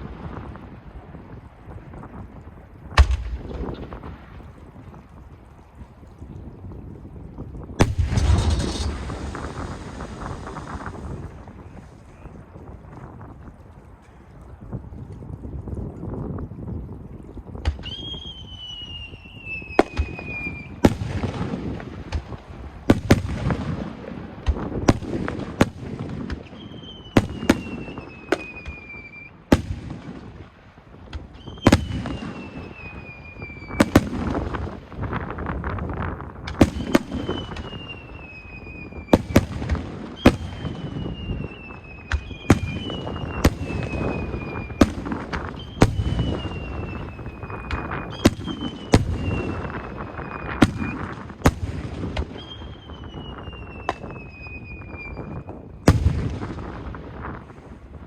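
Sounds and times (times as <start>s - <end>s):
fireworks bursting bangs: 7.8s - 12.3s, 19.8s - 35.6s, 36.4s - 57.6s
rumbling booms: 7.8s - 12.4s
whistling firework shells: 7.8s - 12.4s, 17.7s - 23.6s, 26.3s - 30.1s, 31.1s - 34.8s, 36.5s - 56.9s.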